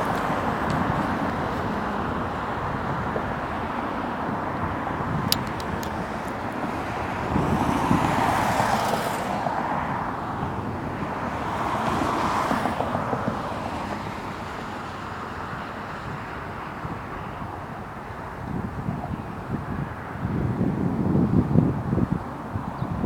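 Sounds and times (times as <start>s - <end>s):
road traffic: 0.0s - 23.0s
vehicles passing: 0.0s - 23.0s
sharp clicks: 5.2s - 6.4s.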